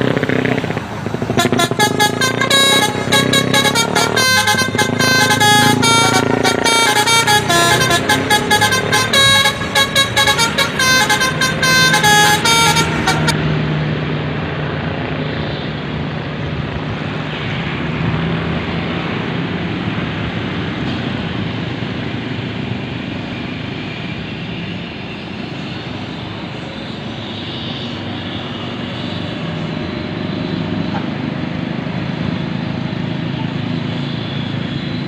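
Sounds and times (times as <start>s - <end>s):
bus engine drone: 0.0s - 35.0s
road noise: 0.0s - 35.0s
multi-tone musical air horn: 1.4s - 13.4s.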